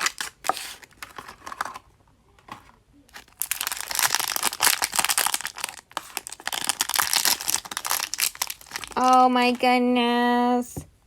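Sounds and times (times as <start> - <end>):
plastic bags crinkling and tearing: 0.0 - 1.8, 3.1 - 9.6.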